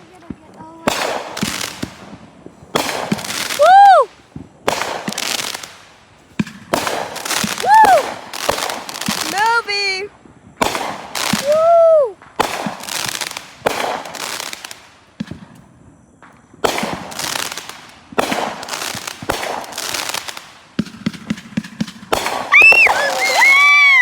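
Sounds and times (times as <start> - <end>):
fireworks booming: 0.0 - 24.0
fireworks crackling pops: 0.0 - 24.0
people whooping and cheering: 3.5 - 4.1, 7.6 - 8.2, 11.4 - 12.2, 22.5 - 24.0.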